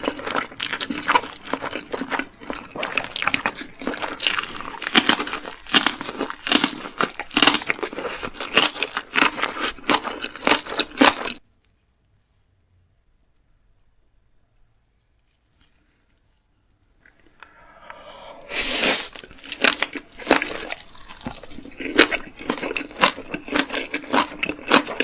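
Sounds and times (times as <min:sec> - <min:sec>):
person chewing crunchy food: 0:00.0 - 0:11.4, 0:17.0 - 0:25.0.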